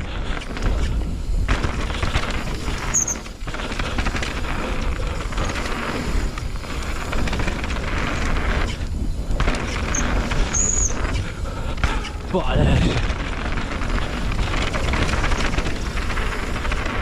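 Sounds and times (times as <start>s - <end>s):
bike tyres rumbling on trail: 0.0s - 17.0s
wind buffeting microphone: 0.0s - 17.0s
disc brakes squealing: 2.8s - 3.3s, 9.8s - 11.2s.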